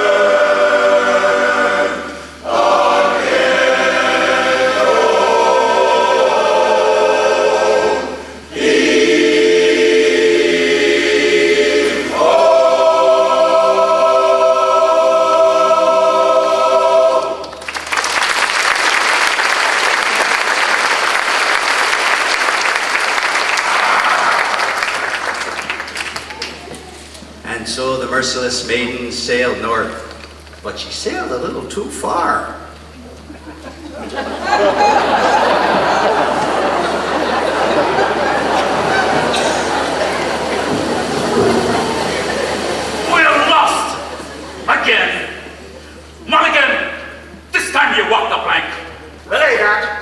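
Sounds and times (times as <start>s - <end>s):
a cappella chorus singing chords: 0.0s - 17.8s, 33.9s - 44.7s
audience applause: 17.4s - 27.1s, 34.1s - 45.6s.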